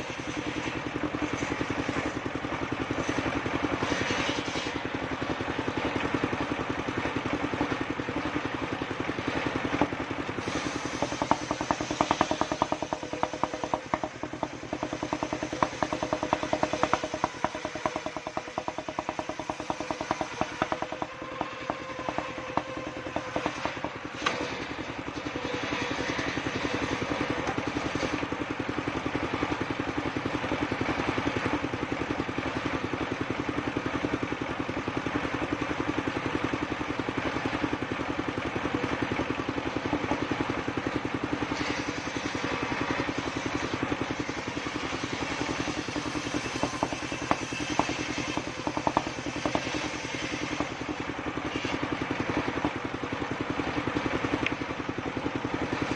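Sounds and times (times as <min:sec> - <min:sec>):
sawmill engine running: 0:00.0 - 0:55.9
sharp clattering knocks: 0:10.7 - 0:24.7, 0:45.1 - 0:51.0.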